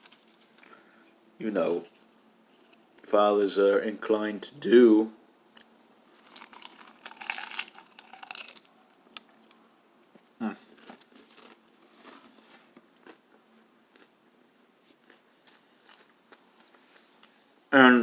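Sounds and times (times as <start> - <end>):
snack crunching: 5.6 - 9.7, 10.5 - 11.8, 12.9 - 14.2, 14.8 - 17.4.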